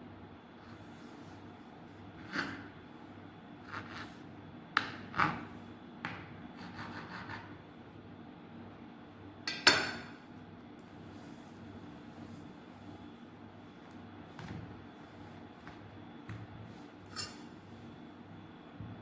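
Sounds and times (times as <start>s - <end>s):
knife cutting dough on a board: 0.6s - 2.8s, 3.6s - 7.6s, 13.8s - 17.6s.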